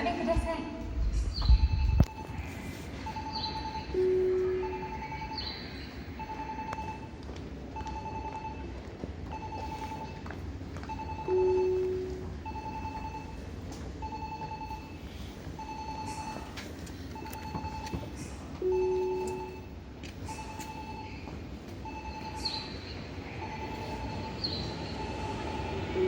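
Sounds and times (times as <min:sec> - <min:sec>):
deep signal tone: 0:01.5 - 0:07.1, 0:10.9 - 0:16.6, 0:17.2 - 0:26.0.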